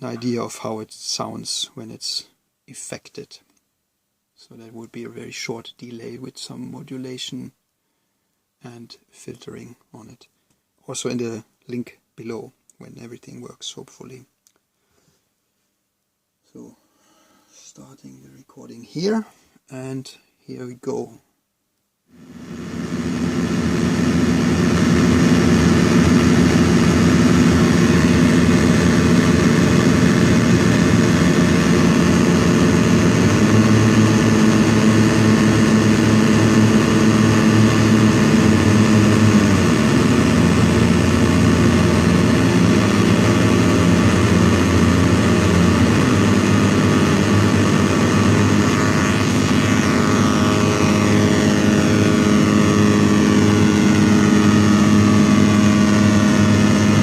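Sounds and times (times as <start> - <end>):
raw buzzing synthesizer drone: 22.2 - 57.0.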